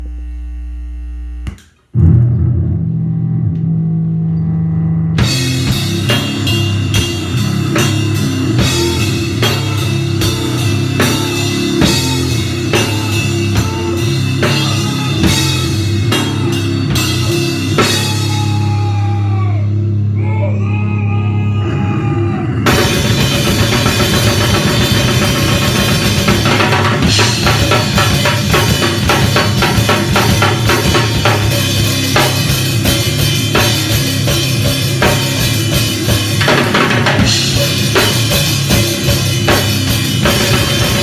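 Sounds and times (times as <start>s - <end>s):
low hum: 0.0s - 13.0s
distorted guitar and bass: 0.0s - 41.0s
drum kit with crashing cymbals: 5.2s - 19.2s, 22.7s - 41.0s.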